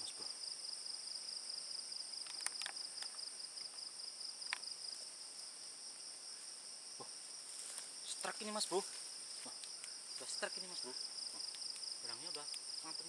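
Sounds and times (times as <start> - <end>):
insect chorus trilling: 0.0 - 13.0
faint clicks: 2.2 - 3.7, 4.4 - 4.7, 9.5 - 10.0, 11.3 - 12.7.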